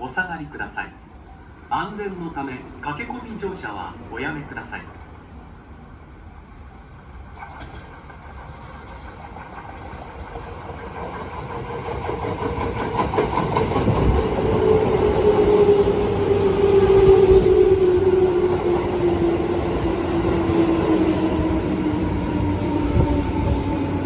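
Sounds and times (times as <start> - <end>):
electric train departing: 0.0 - 24.0
wheel clatter on rails: 7.4 - 14.6.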